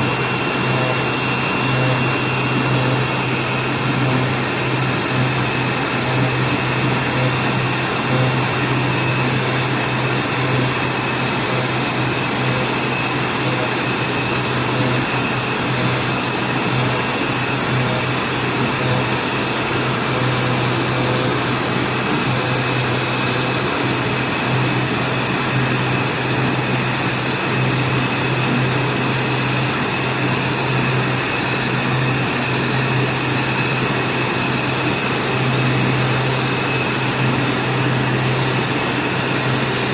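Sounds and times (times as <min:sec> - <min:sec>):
cnc router machine hum: 0:00.0 - 0:39.9
high whine: 0:00.0 - 0:39.9.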